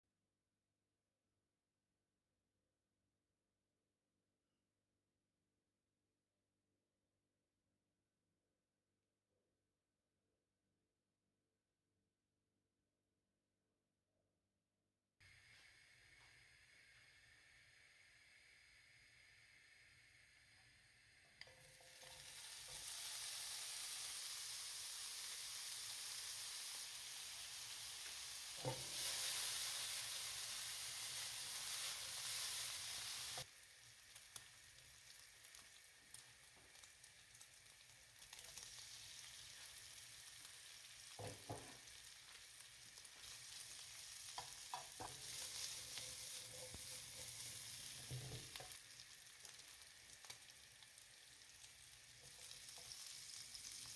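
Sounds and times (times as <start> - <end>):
food sizzling in a frying pan: 15.3 - 53.9.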